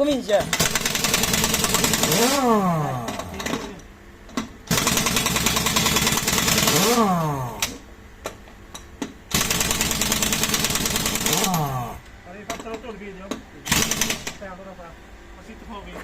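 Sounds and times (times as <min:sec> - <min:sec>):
pneumatic impact wrench hammering: 0:00.4 - 0:03.7, 0:04.3 - 0:12.0, 0:13.6 - 0:14.4.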